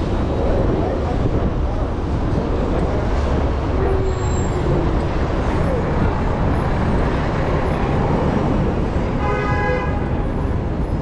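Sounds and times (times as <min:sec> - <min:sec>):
crowd chatter: 0:00.0 - 0:09.2
traffic rumble: 0:00.0 - 0:11.0.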